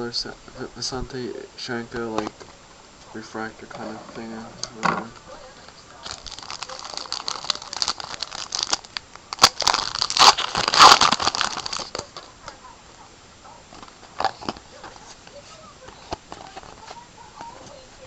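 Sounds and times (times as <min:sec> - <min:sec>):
plastic wrapper crinkling and tearing: 0:06.0 - 0:12.6, 0:13.7 - 0:15.2.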